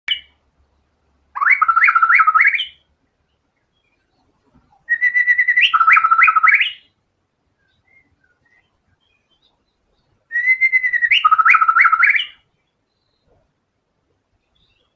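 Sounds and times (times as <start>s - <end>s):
bird whistled song: 0.1s - 0.4s, 1.4s - 2.9s, 4.8s - 7.0s, 7.6s - 13.4s.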